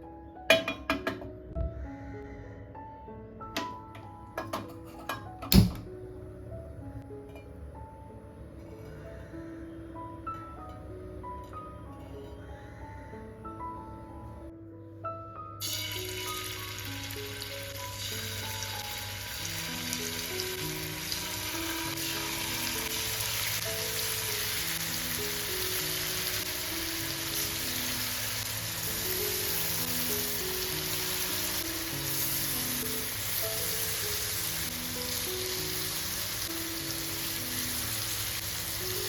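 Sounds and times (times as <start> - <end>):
slow instrumental melody: 0.0 - 39.0
chicken sizzling in hot oil: 15.6 - 39.0.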